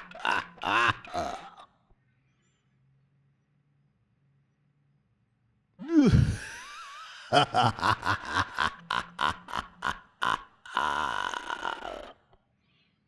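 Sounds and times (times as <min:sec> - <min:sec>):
man laughing evilly: 0:00.0 - 0:01.6, 0:05.8 - 0:12.2.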